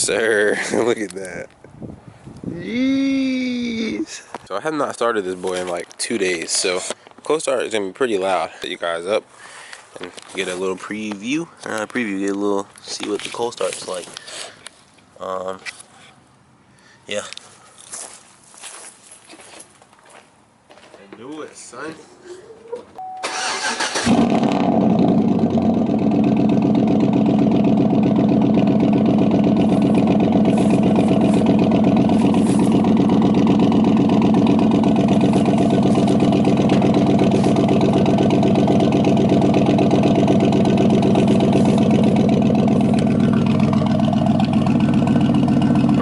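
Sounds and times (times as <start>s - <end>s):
engine running loud: 24.1s - 46.0s.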